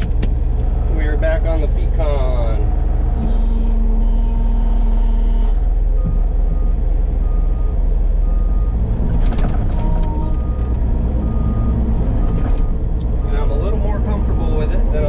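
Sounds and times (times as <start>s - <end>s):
diesel engine running under load: 0.0s - 15.0s
backup alarm beeping: 9.8s - 13.5s.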